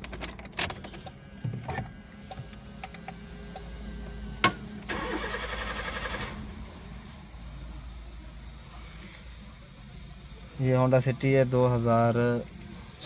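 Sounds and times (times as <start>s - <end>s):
car engine cranking without starting: 4.8s - 7.2s.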